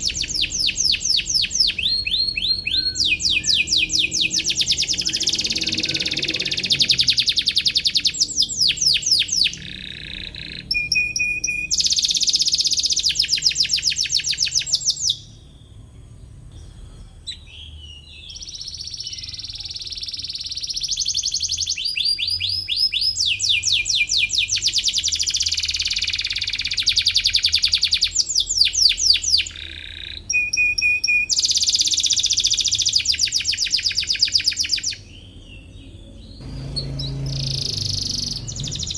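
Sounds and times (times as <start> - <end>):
canary singing in rapid trills: 0.0 - 16.0, 17.2 - 38.9.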